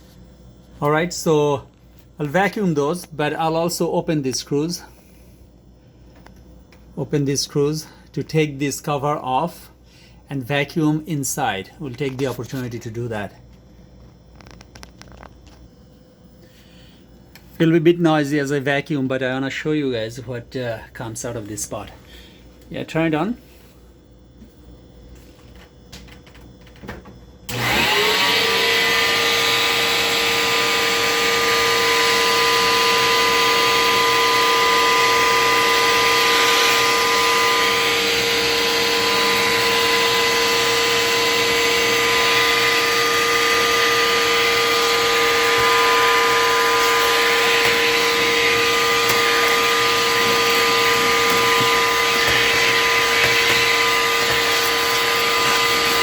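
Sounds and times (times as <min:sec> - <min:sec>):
vacuum cleaner motor whining: 0:25.2 - 0:56.0.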